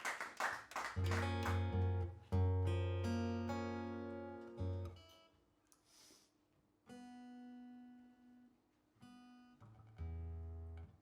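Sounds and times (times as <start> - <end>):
acoustic guitar notes plucked: 1.0 - 5.1
short breathy hiss: 5.8 - 6.4.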